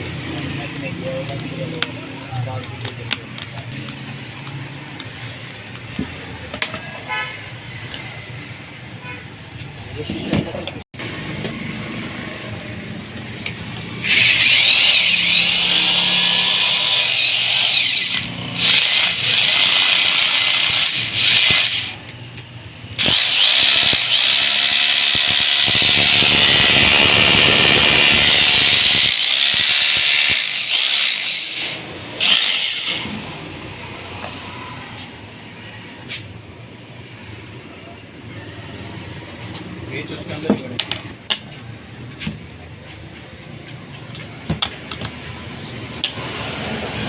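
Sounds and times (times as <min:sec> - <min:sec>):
electric drill motor running: 0:14.0 - 0:22.0, 0:23.0 - 0:33.2.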